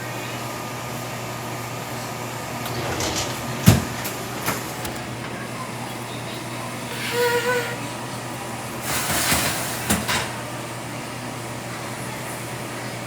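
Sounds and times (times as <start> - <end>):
kitchen things handled and set down: 2.7 - 5.4.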